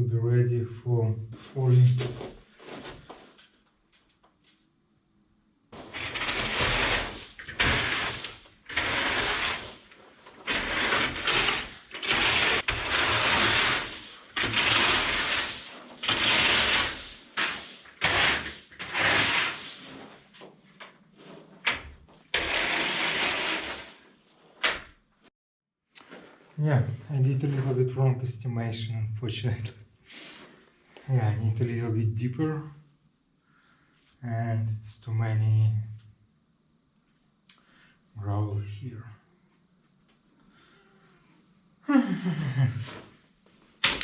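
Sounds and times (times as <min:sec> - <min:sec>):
hand tool scraping sand and gravel: 0:05.8 - 0:20.3, 0:21.2 - 0:24.2.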